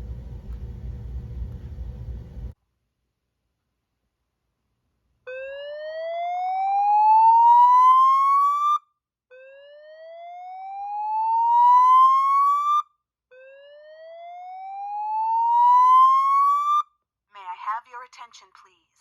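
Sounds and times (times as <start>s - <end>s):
fire alarm whoop tone: 5.3s - 16.9s.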